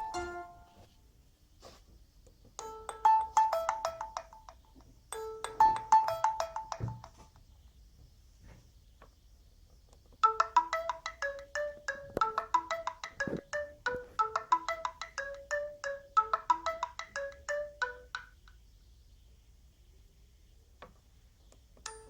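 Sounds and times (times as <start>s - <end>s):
phone ringtone melody: 0.0s - 0.9s, 2.6s - 7.2s, 10.2s - 18.3s.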